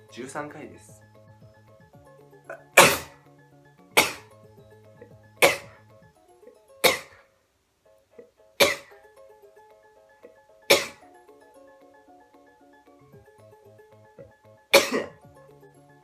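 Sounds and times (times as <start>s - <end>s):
light background music: 0.0s - 16.0s
man sneezing: 2.5s - 3.2s.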